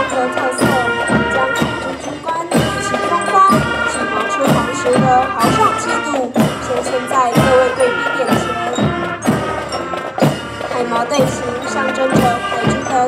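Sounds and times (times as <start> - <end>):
music with a strong beat: 0.0 - 13.0
sliding melody: 0.0 - 13.0.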